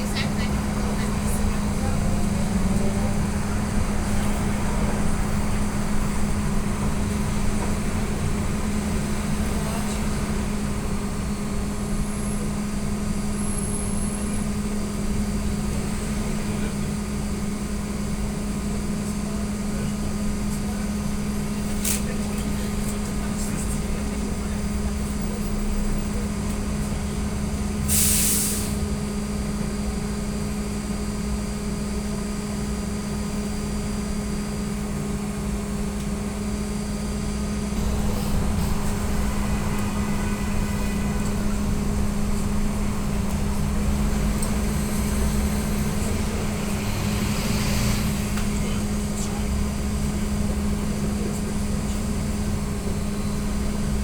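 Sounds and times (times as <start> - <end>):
electric hum of trolleybus drive: 0.0 - 54.0
low road rumble: 0.0 - 54.0
compressed air hiss: 27.9 - 28.8.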